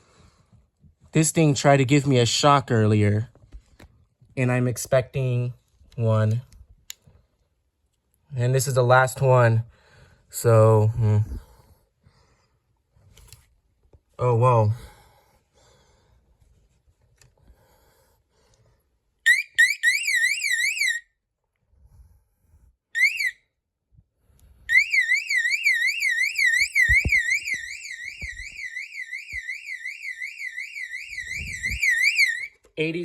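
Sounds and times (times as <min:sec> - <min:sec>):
fire alarm siren warbling: 0:19.3 - 0:21.0, 0:23.0 - 0:23.4, 0:24.7 - 0:32.6.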